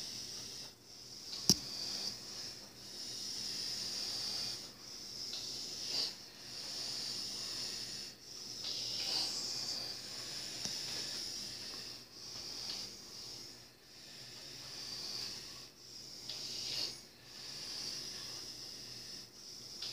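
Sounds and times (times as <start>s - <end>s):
sleeping person breathing: 0.0s - 19.9s
sharp click: 1.4s - 1.7s.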